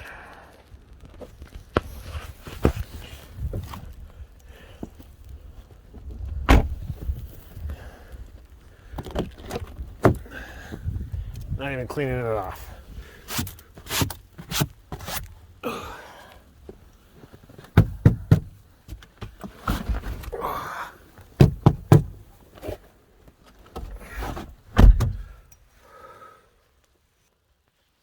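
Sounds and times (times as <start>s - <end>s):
knocks and clicks inside car: 17.8s - 18.6s, 21.4s - 22.2s.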